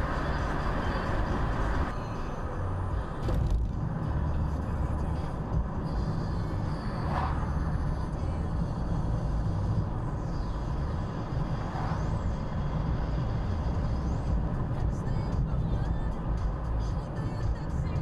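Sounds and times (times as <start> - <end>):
car engine and road noise: 0.0 - 18.0.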